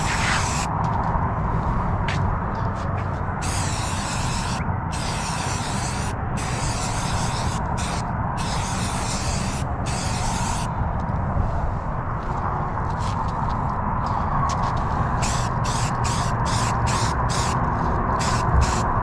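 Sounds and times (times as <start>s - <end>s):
aerosol spray can hissing: 0.0s - 0.7s, 3.4s - 10.7s, 15.2s - 17.6s, 18.2s - 18.8s.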